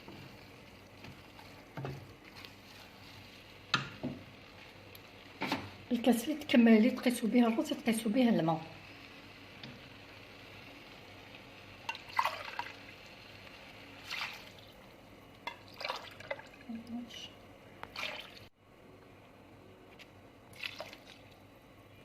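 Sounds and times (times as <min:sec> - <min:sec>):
water pouring and splashing: 0:12.0 - 0:12.8, 0:14.0 - 0:14.8, 0:15.6 - 0:16.7, 0:17.9 - 0:18.5, 0:20.5 - 0:21.4.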